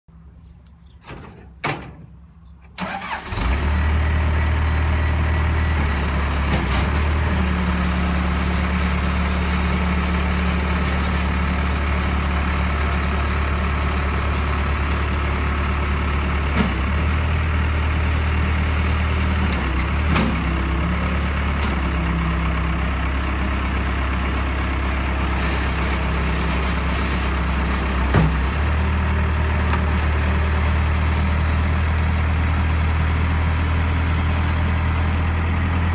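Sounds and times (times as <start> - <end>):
diesel engine starting and idling: 0.8 - 35.9.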